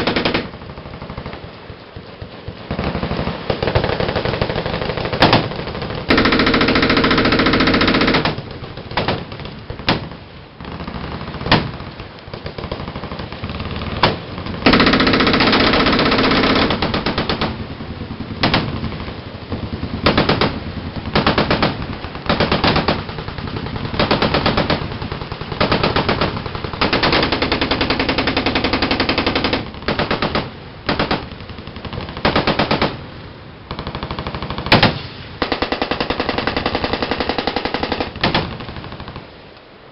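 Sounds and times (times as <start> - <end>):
machine guns firing bursts: 0.0 - 1.5, 2.2 - 33.0, 33.7 - 39.3
single gunshots: 34.6 - 35.6.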